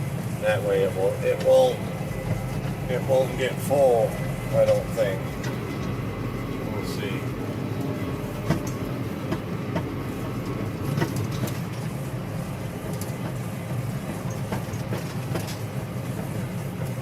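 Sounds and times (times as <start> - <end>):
tractor engine drone: 0.0 - 17.0
machinery clicks and rattles: 0.6 - 17.0.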